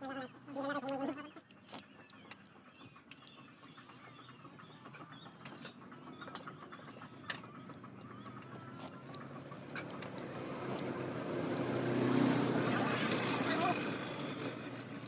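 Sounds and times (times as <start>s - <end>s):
faint birds chirping: 0.0s - 15.0s.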